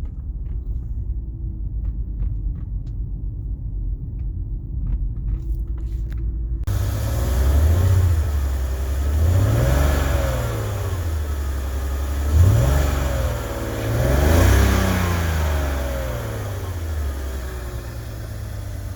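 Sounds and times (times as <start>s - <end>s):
car engine revving from idle: 6.7s - 18.9s.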